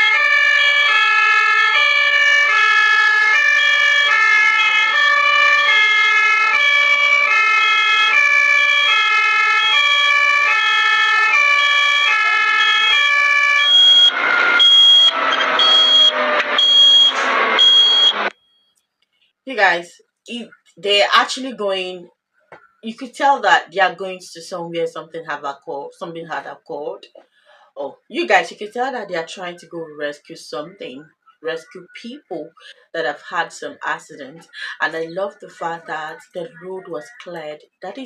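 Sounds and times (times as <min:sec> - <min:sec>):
two-tone ambulance siren: 0:00.0 - 0:18.4
high beeping: 0:13.6 - 0:18.4.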